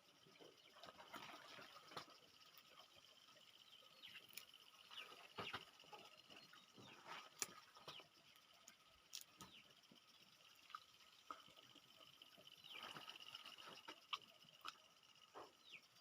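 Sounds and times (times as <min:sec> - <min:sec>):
peanuts cracked and eaten: 0:09.1 - 0:09.5.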